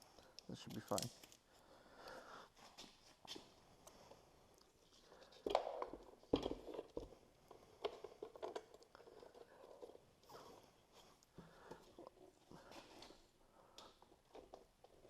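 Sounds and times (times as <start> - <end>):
light clicks and crackles of wiring: 0.2 - 1.4.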